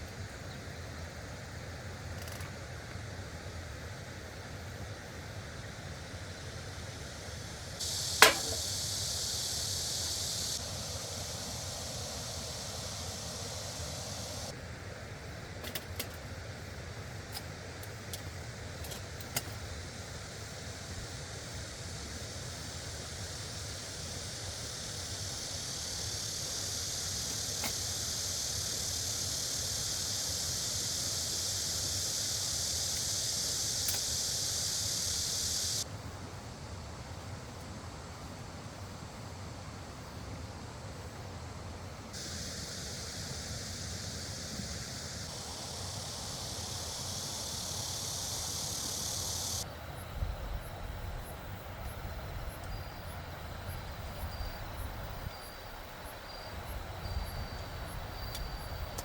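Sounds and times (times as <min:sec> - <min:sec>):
faint ticks: 0:02.1 - 0:03.0, 0:26.8 - 0:28.1, 0:32.8 - 0:34.3, 0:51.6 - 0:59.0
sharp click: 0:07.8 - 0:08.7.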